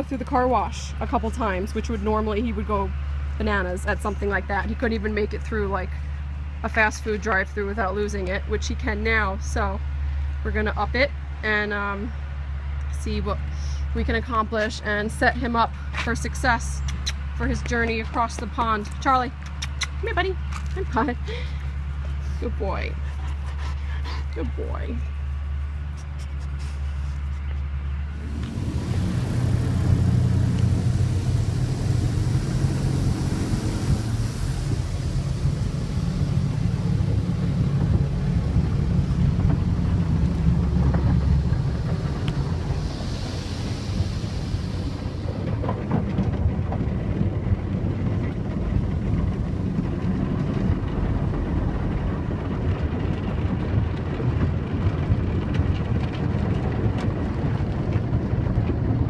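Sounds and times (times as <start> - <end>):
car wash machinery rumble: 0.0 - 59.0
water spray hissing: 28.1 - 45.6.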